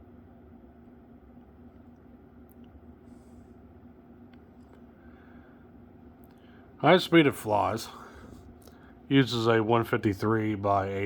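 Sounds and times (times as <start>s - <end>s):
ceiling fan humming: 0.0s - 11.0s
fan bearings whirring: 0.0s - 11.0s.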